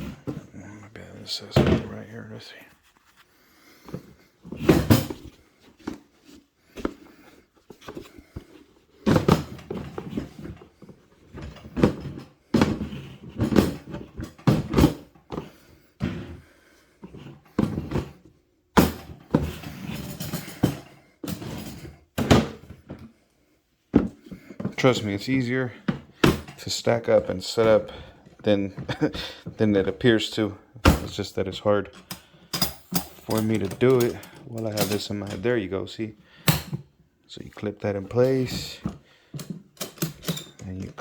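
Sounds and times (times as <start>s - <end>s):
toolbox pieces thunking and clattering: 4.5s - 6.0s, 9.0s - 16.3s, 17.3s - 23.1s, 25.8s - 26.6s, 32.0s - 35.5s, 38.2s - 41.0s.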